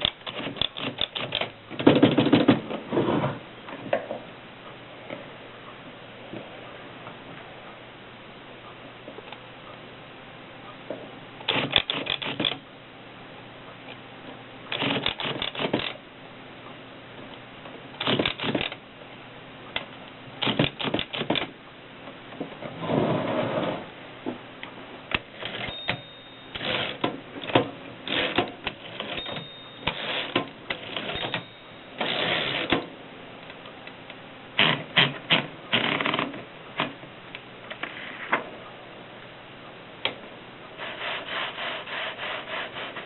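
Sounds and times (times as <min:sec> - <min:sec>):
manual typewriter keys clacking: 0:00.0 - 0:02.6, 0:11.5 - 0:12.6, 0:14.7 - 0:16.0, 0:18.0 - 0:18.8, 0:20.4 - 0:21.5, 0:25.4 - 0:32.8.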